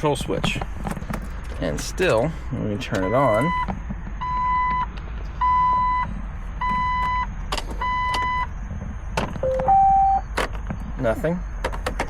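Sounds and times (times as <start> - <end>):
steady low rumble: 0.0 - 11.6
dashboard warning chime beeping: 2.9 - 8.5, 9.4 - 10.3.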